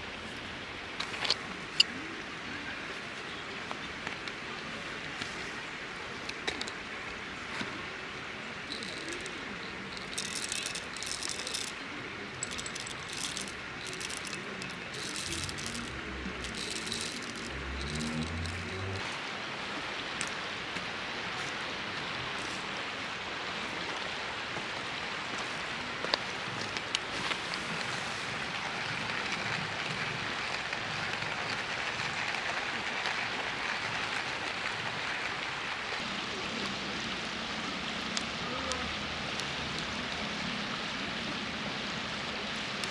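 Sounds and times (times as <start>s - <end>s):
metallic clinking and rattling: 8.7s - 19.0s.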